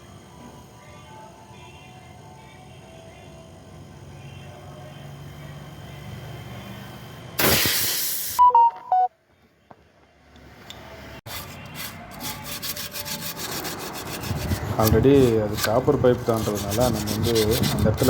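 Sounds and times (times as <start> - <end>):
short loud hiss: 7.4 - 8.4
electronic beeps: 8.4 - 9.1
emery cloth scrubbing copper pipe: 11.3 - 18.0.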